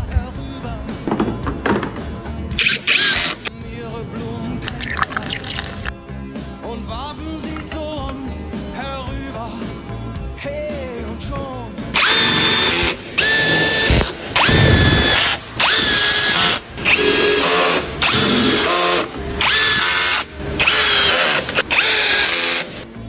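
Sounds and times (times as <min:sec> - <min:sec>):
power drill whining: 0:01.1 - 0:03.5, 0:04.5 - 0:05.9, 0:11.9 - 0:23.0.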